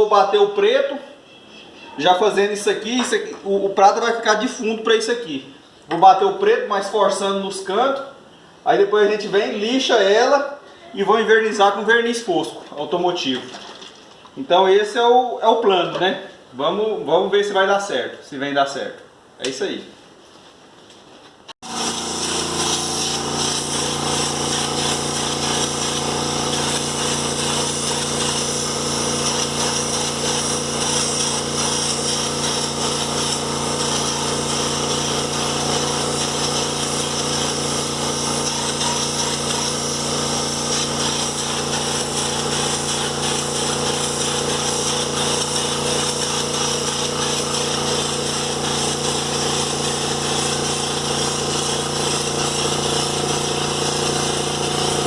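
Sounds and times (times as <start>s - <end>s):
air compressor running: 21.6s - 55.0s
spray gun hissing: 21.6s - 55.0s.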